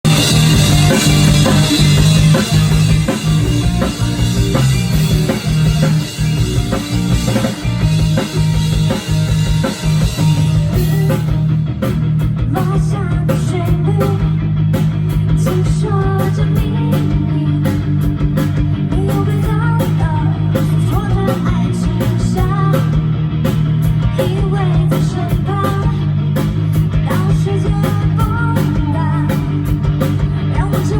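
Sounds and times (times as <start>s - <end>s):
drum hits: 0.0s - 11.5s
guitar: 0.0s - 30.9s.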